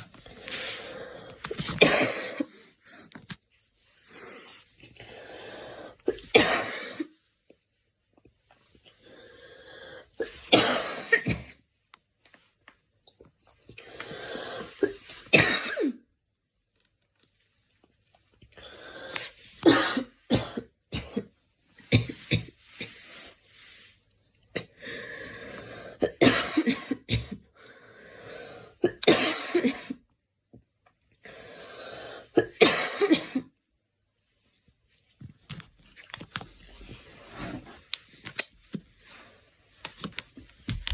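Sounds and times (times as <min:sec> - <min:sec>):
drawn-in breath: 0:00.2 - 0:01.5
girl coughing: 0:01.7 - 0:02.5, 0:06.1 - 0:07.2, 0:10.2 - 0:11.6, 0:14.8 - 0:16.0, 0:19.6 - 0:21.3, 0:26.0 - 0:27.4, 0:28.8 - 0:30.0, 0:32.4 - 0:33.5.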